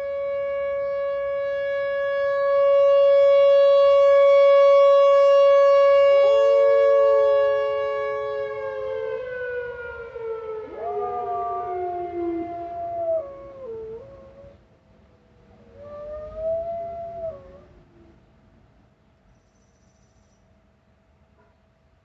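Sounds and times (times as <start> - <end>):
tornado siren winding down: 0.0 - 14.5
dog howling: 8.4 - 14.5, 15.6 - 18.0.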